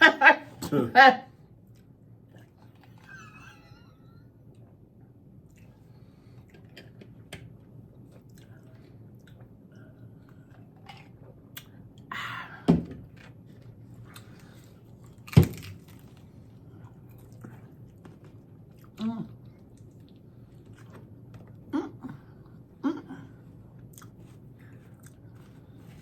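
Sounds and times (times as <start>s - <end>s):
chewing crispy tostadas: 7.8s - 12.1s, 13.4s - 22.7s, 23.7s - 26.0s.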